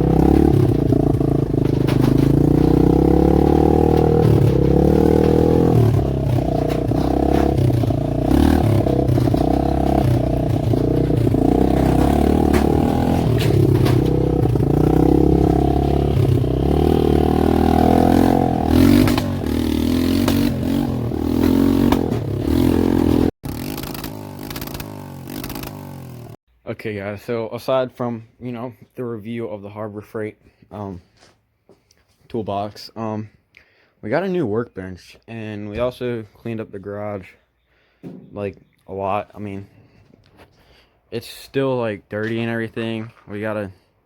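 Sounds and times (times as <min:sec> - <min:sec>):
vehicle engine revving: 0:00.0 - 0:26.4.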